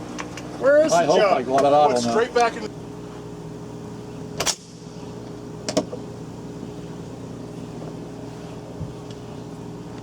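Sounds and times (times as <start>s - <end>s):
low mechanical drone: 0.0s - 10.0s
gunshot: 4.4s - 4.8s.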